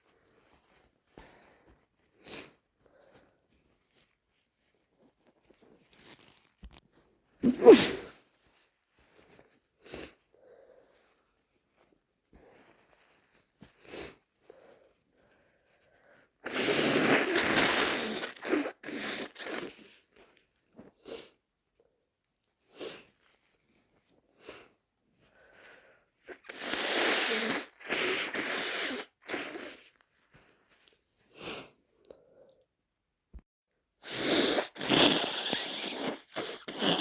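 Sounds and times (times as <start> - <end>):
person blowing nose: 2.1 - 2.6, 7.4 - 8.3, 9.8 - 10.2, 13.8 - 14.2, 16.4 - 20.0, 26.3 - 30.0, 34.0 - 37.0
person sneezing: 7.4 - 8.2
person sniffing: 7.4 - 8.2, 16.4 - 19.8, 26.3 - 29.9, 34.0 - 37.0.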